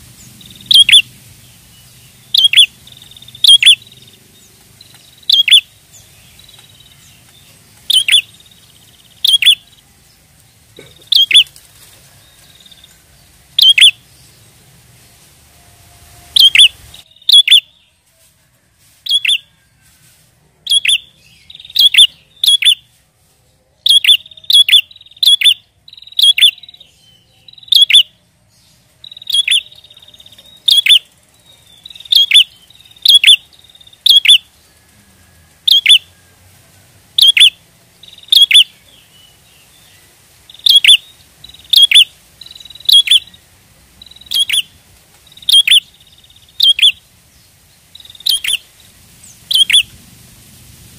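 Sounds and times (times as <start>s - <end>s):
bird chirps sweeping down: 0.2s - 4.2s, 4.9s - 6.9s, 16.3s - 17.8s, 19.0s - 19.5s, 29.0s - 31.1s, 31.8s - 34.4s, 35.7s - 36.0s, 40.5s - 43.4s, 44.0s - 44.7s, 45.3s - 47.0s, 48.0s - 50.0s
buzzy bird trills: 0.2s - 9.8s, 10.8s - 14.4s, 15.9s - 17.9s, 19.0s - 19.6s, 20.7s - 22.9s, 23.8s - 28.2s, 29.0s - 36.5s, 37.1s - 39.1s, 40.4s - 47.1s, 47.9s - 50.0s.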